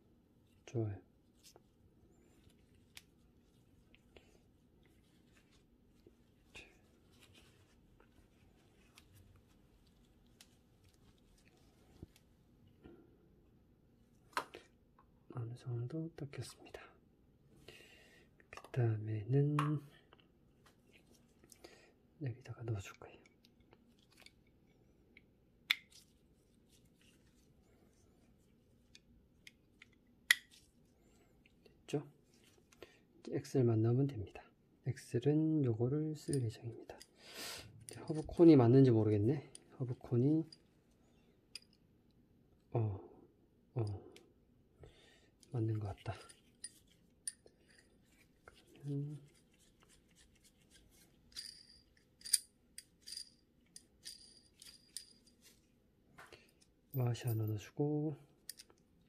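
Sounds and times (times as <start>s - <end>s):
small metal parts clinking: 51.0s - 55.6s, 58.4s - 58.8s
metal ball bearings clicking: 51.3s - 55.3s.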